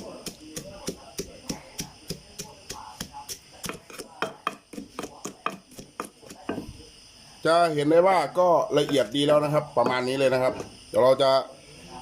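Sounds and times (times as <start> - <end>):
pestle pounding in mortar: 0.0 - 6.8.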